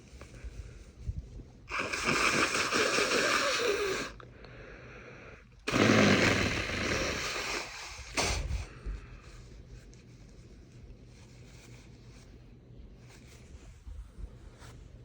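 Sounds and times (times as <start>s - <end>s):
person blowing nose: 1.7s - 4.2s, 5.7s - 8.9s.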